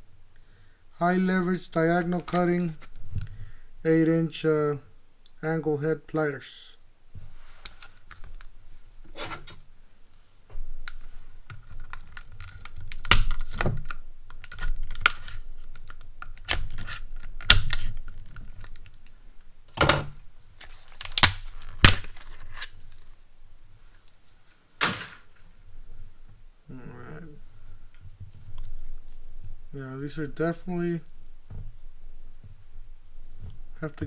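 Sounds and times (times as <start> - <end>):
sharp snaps and knocks: 10.5 - 23.1
plastic packaging crackling: 10.8 - 19.2, 20.5 - 23.2.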